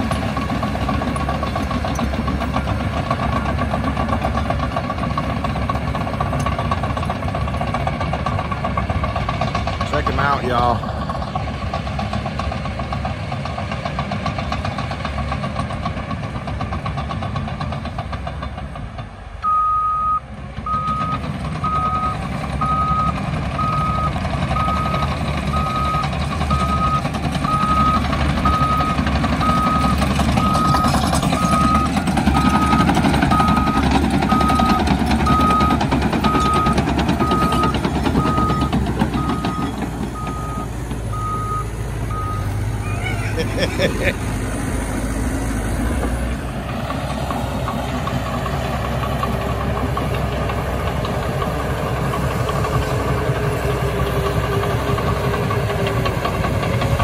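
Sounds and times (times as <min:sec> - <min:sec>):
bulldozer diesel engine running: 0:00.0 - 0:57.0
reverse alarm beeping: 0:19.4 - 0:42.5.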